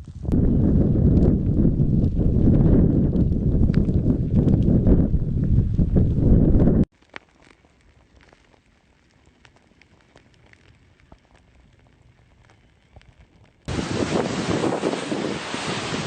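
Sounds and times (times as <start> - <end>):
loud wind noise: 0.0 - 6.9, 13.7 - 16.0
lava crackling: 0.0 - 16.0.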